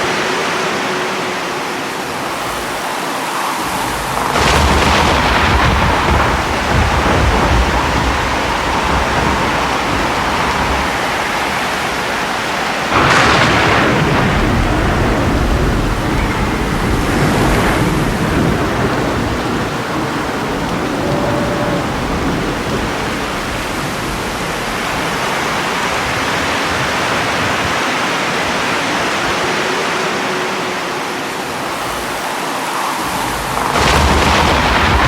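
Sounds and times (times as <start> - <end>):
heavy rain: 0.0 - 35.0
loud thunderclap: 3.6 - 27.8, 33.1 - 35.0
low rolling thunder: 3.6 - 27.8, 33.1 - 35.0.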